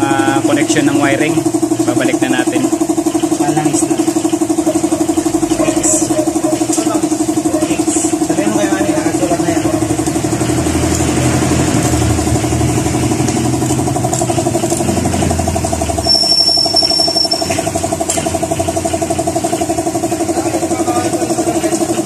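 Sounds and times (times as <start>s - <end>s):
engine running steadily: 0.0s - 22.0s
high-pitched whine: 14.5s - 18.4s.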